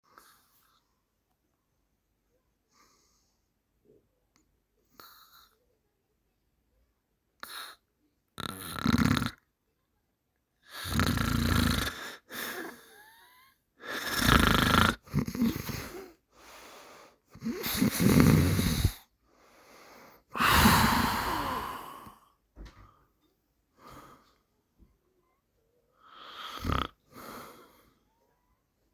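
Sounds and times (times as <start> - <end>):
quiet breaths: 0.0 - 8.4, 10.5 - 28.9
person snoring: 10.7 - 13.1, 13.9 - 16.1, 17.3 - 19.0, 20.3 - 22.2, 26.1 - 27.6.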